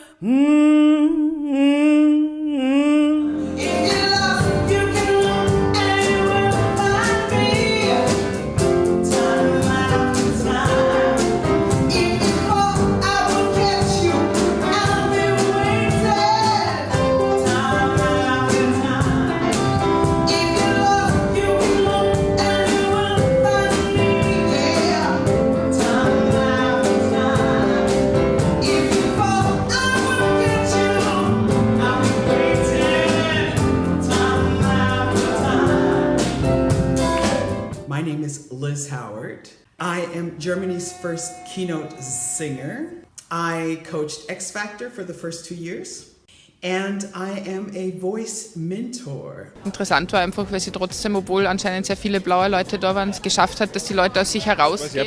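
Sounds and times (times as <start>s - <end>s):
woman singing sliding notes: 0.0s - 8.1s
gospel song with instrumental backing: 3.3s - 38.2s.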